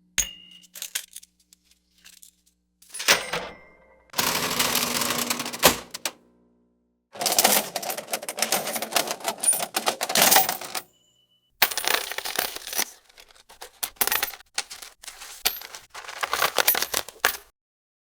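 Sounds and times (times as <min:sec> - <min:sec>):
cash register clicking: 0:02.9 - 0:06.2, 0:07.2 - 0:10.9.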